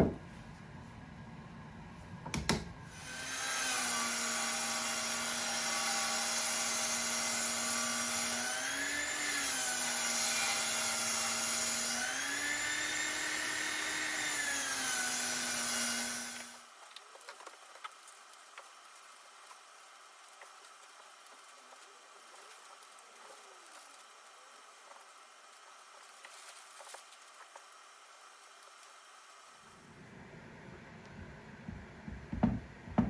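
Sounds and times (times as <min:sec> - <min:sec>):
power tool motor humming: 0:02.9 - 0:16.7.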